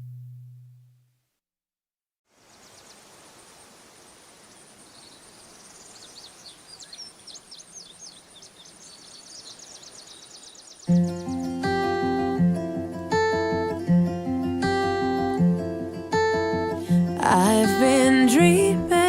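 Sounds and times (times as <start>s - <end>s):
insects trilling: 2.4s - 11.8s
birds chirping: 2.4s - 12.5s.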